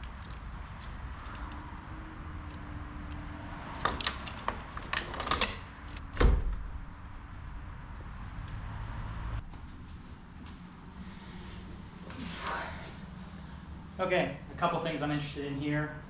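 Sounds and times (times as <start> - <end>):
clicks and rattles of handling: 2.4 - 6.1
steady low rumble: 5.7 - 15.2.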